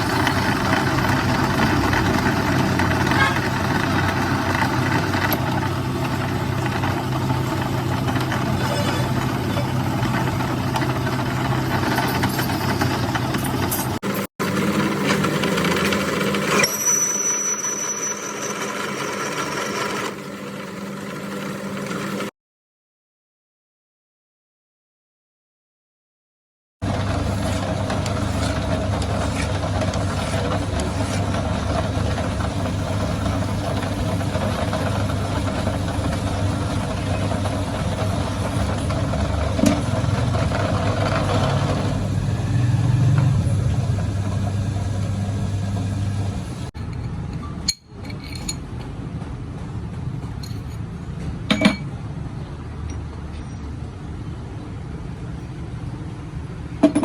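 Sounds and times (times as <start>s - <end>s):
machine humming: 26.8s - 46.7s.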